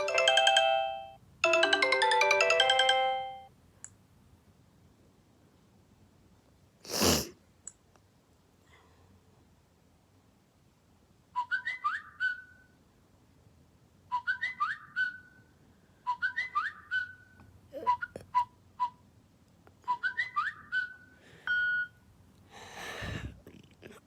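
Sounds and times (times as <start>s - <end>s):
phone ringtone whistle-like notes: 0.0s - 3.5s, 21.5s - 22.0s.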